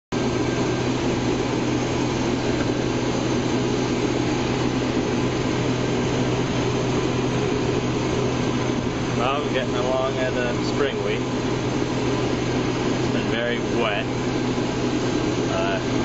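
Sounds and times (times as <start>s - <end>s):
combine separator roar: 0.1s - 16.0s
low engine hum: 0.1s - 16.0s.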